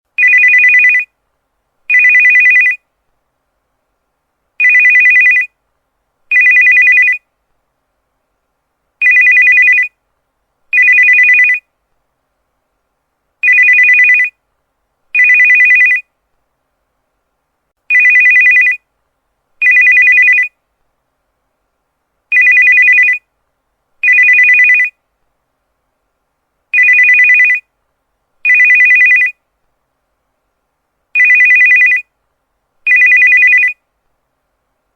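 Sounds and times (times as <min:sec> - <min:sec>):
phone ringtone two-tone trill: 0:00.2 - 0:01.1, 0:01.9 - 0:02.8, 0:04.6 - 0:05.5, 0:06.3 - 0:07.2, 0:09.0 - 0:09.9, 0:10.8 - 0:11.6, 0:13.4 - 0:14.3, 0:15.2 - 0:16.0, 0:17.9 - 0:18.8, 0:19.6 - 0:20.5, 0:22.3 - 0:23.2, 0:24.0 - 0:24.9, 0:26.8 - 0:27.6, 0:28.4 - 0:29.4, 0:31.2 - 0:32.0, 0:32.9 - 0:33.8.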